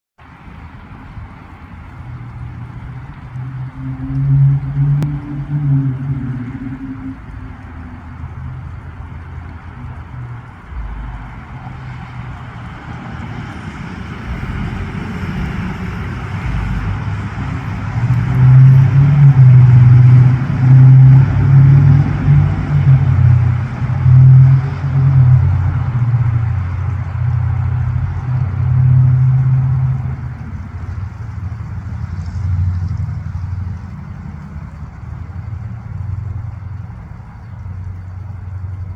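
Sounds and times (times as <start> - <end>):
rocket launch rumble: 10.6 - 26.6.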